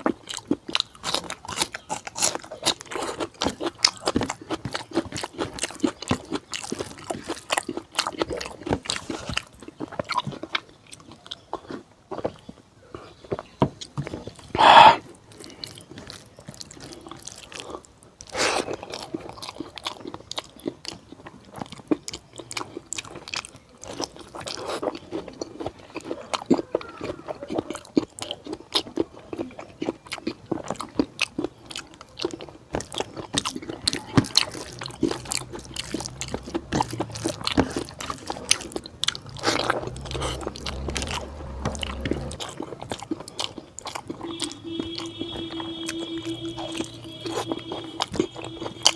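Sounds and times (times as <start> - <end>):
food crunching: 0.0 - 48.9
person chewing food: 0.0 - 48.9
wet mouth clicks: 14.5 - 15.1, 33.4 - 48.9.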